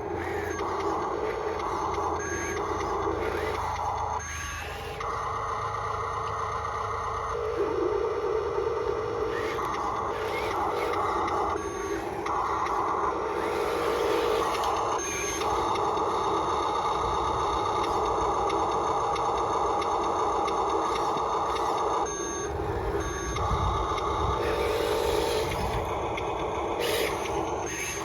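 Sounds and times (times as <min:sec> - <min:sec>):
small electric gear motors whining: 0:00.0 - 0:28.0.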